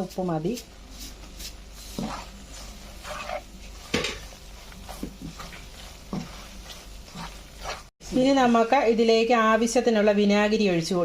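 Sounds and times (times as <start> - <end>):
spoon scraping a pan: 1.0 - 7.9.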